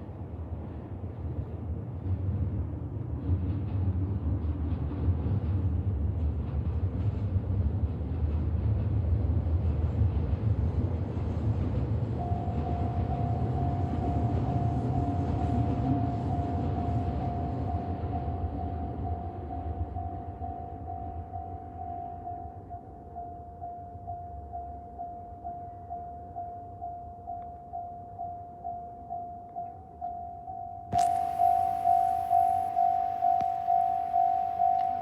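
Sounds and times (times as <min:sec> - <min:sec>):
train wheels rumbling on rail: 0:00.0 - 0:21.9
level crossing alarm dinging: 0:12.2 - 0:35.0.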